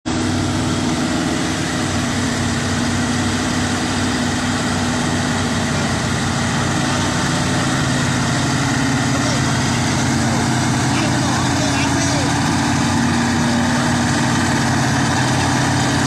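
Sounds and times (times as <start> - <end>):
diesel engine running: 0.0 - 16.0.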